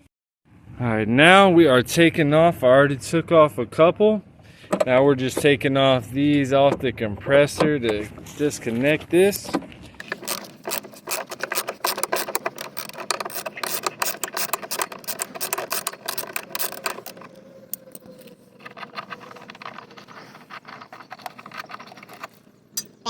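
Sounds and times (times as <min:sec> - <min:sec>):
ratchet wrench clicking: 0:10.0 - 0:18.0.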